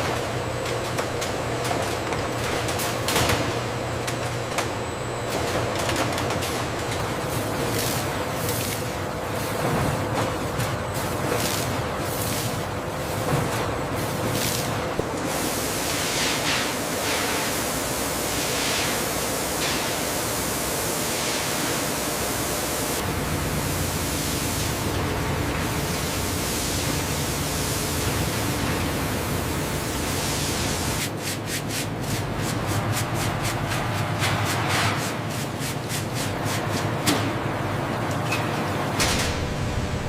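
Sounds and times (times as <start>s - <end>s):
factory machinery hiss: 10.9s - 31.2s.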